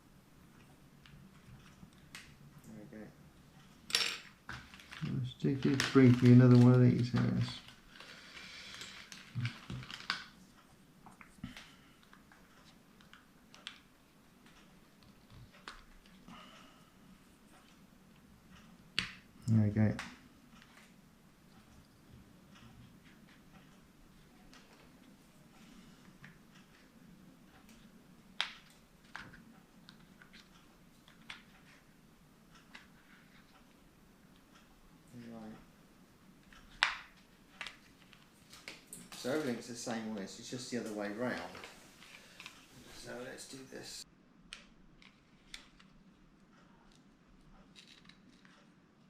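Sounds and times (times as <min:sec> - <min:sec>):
small tools and plastic parts clicking: 0:03.9 - 0:16.2, 0:46.9 - 0:48.7.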